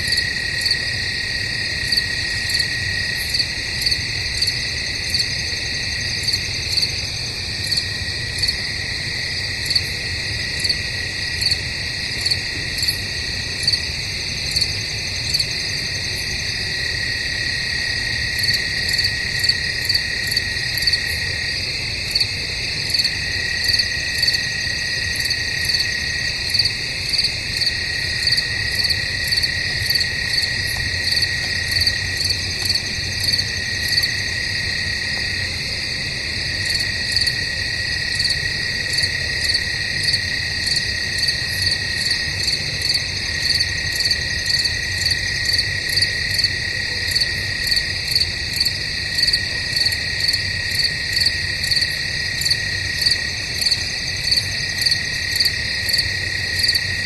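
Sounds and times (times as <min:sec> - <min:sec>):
crickets chirping: 0:00.0 - 0:57.0.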